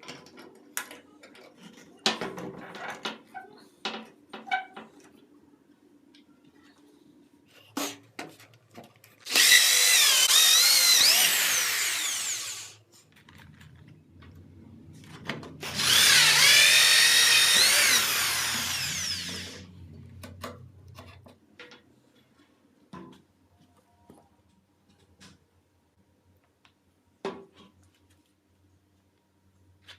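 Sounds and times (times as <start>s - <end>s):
electric drill whining: 9.2s - 12.8s, 15.6s - 19.7s.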